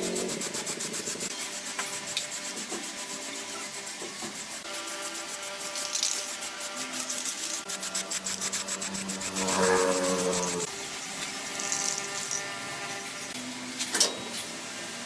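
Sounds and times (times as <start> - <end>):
hand sanding strokes: 0.0 - 13.8.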